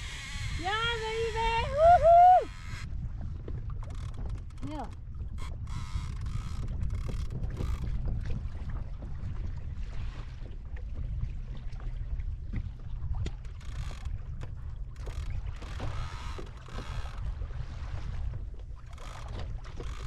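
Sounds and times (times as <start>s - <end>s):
water splashing: 0.0s - 20.0s
wind rumbling on microphone: 0.0s - 20.0s.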